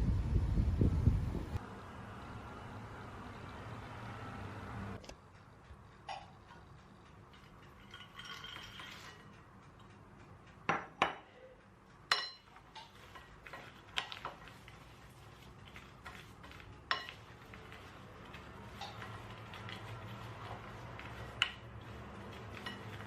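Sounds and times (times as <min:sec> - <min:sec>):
utensils clinking against dishes: 0:07.3 - 0:09.3, 0:10.8 - 0:23.0.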